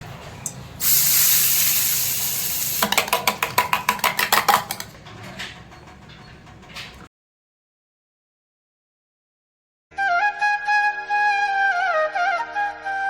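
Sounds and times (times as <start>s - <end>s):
loud hiss: 0.7s - 3.0s.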